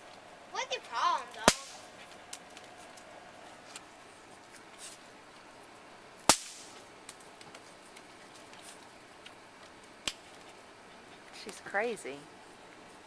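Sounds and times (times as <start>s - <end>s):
firecracker crack: 1.2s - 3.1s, 6.2s - 7.6s, 10.0s - 10.4s.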